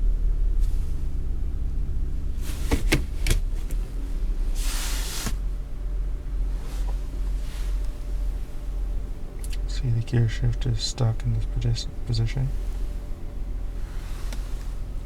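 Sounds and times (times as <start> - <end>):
car engine idling: 0.0 - 15.0
gearshift lever clicking: 2.6 - 3.8
short hiss: 4.6 - 5.5.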